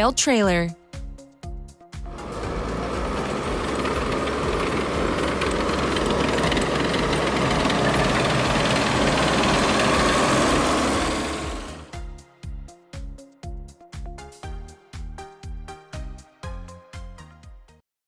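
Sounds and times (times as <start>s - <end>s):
tractor diesel engine knocking: 2.3s - 11.9s.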